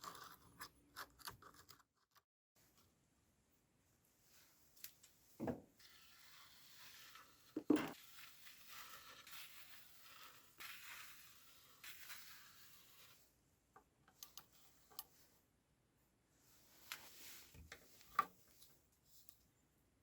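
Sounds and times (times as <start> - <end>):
scrubbing rust off a knife blade: 5.8 - 13.2.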